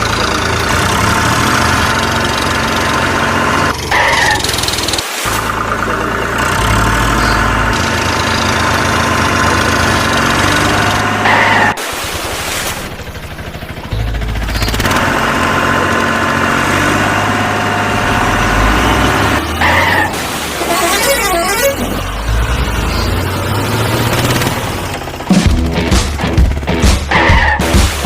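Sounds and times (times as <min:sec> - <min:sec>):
vehicle engines running: 0:00.0 - 0:28.0
horn honking: 0:17.0 - 0:24.2.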